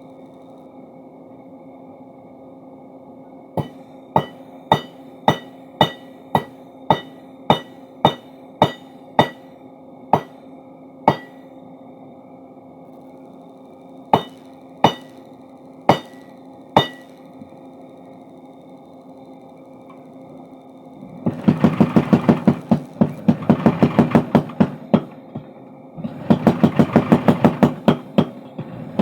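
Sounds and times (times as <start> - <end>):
steady hum: 0.0 - 29.0
hammer striking steel: 3.6 - 9.5, 10.2 - 10.4, 11.1 - 11.5, 14.2 - 15.3, 15.9 - 17.2, 21.3 - 29.0.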